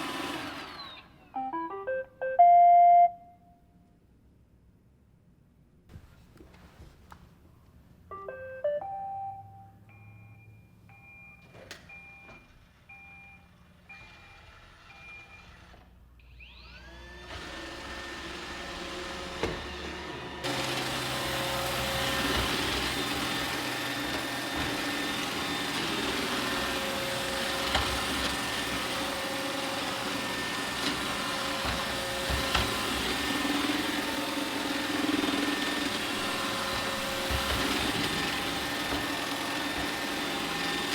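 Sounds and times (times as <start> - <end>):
robot vacuum motor whine: 0.0 - 1.4, 13.8 - 40.9
electronic tones: 1.4 - 3.6
beeps: 8.2 - 13.4.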